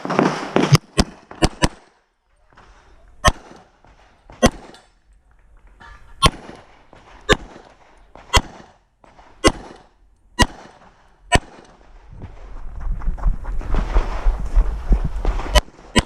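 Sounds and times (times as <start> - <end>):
handgun shots with echo: 4.3 - 4.9, 6.2 - 11.8.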